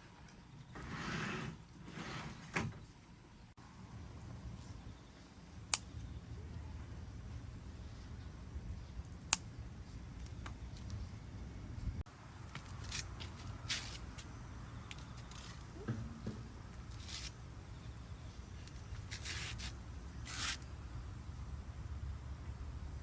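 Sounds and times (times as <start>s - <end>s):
short scraping sounds: 0.7s - 2.5s, 19.0s - 20.6s.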